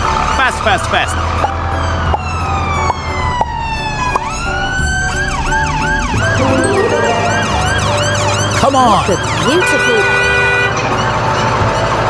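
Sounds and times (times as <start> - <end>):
siren wailing: 6.2 - 8.4.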